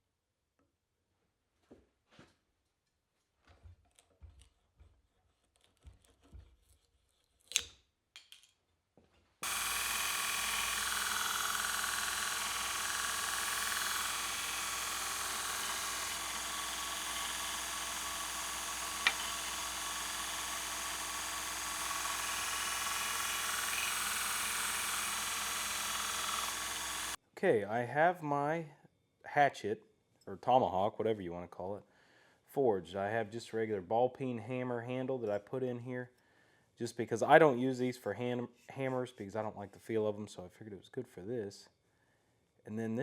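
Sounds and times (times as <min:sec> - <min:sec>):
power tool running: 0:09.4 - 0:27.2.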